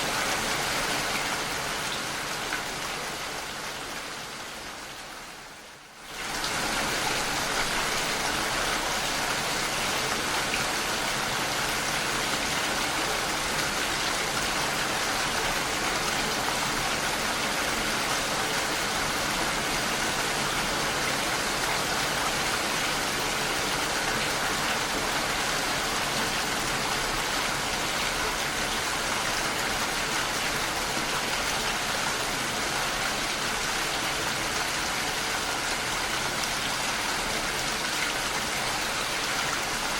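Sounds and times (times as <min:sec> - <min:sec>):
heavy rain: 0:00.0 - 0:39.9.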